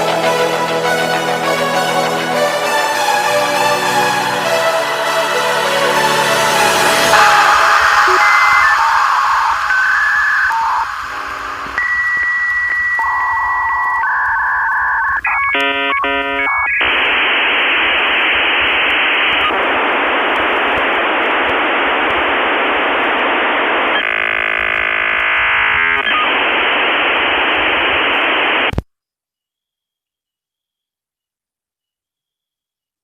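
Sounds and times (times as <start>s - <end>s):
radio static hiss: 6.4s - 28.8s
buzzing tones: 6.9s - 17.1s
electronic beep tones: 7.1s - 16.8s.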